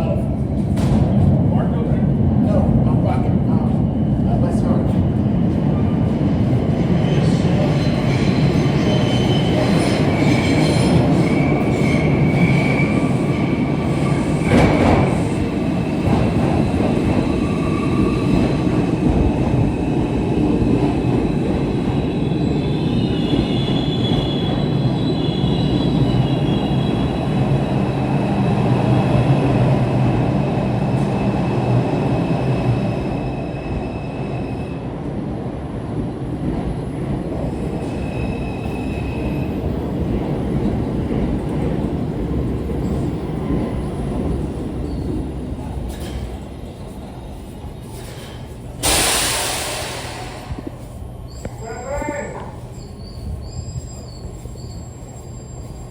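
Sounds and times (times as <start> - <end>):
subway train rumbling on rails: 0.0 - 55.9
wheel squeal: 52.7 - 55.9.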